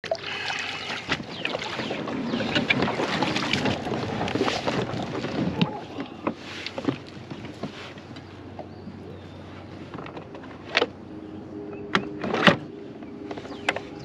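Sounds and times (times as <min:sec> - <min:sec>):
small sharp splashes: 0:00.0 - 0:05.8
water sloshing against kayak: 0:00.0 - 0:10.6.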